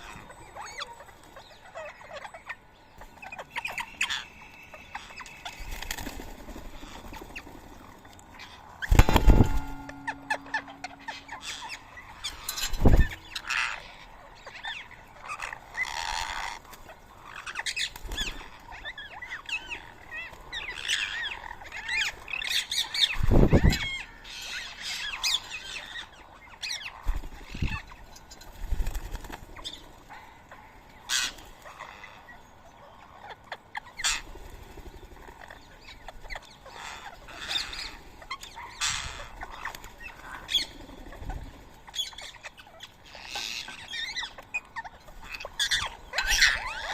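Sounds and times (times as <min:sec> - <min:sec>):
parakeets squawking and chirping: 0:00.0 - 0:06.1, 0:08.4 - 0:28.0, 0:41.9 - 0:46.9
wing thumps: 0:08.8 - 0:11.8.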